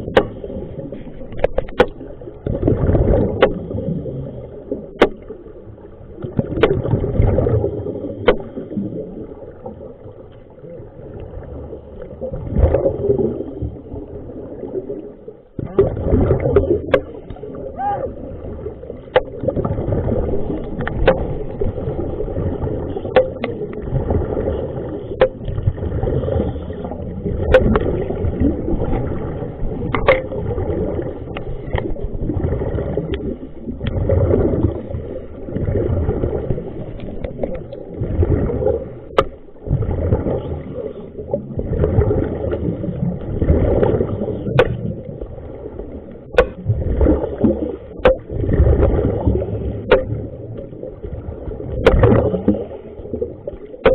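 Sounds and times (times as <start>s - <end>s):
muffled water sloshing: 0.0s - 53.9s
sharp clicks and knocks: 1.3s - 2.6s, 20.6s - 21.4s, 23.1s - 23.6s, 29.9s - 30.3s, 46.3s - 46.7s, 48.0s - 48.3s, 49.9s - 50.7s, 51.7s - 52.5s.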